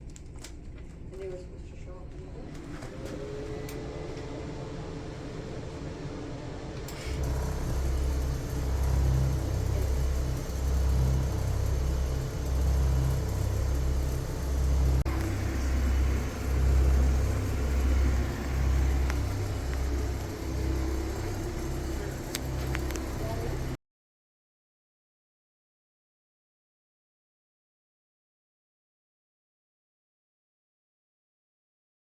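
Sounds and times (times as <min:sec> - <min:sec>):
machine motor rumbling: 0:02.1 - 0:23.8
click: 0:03.7 - 0:04.3, 0:22.2 - 0:23.4.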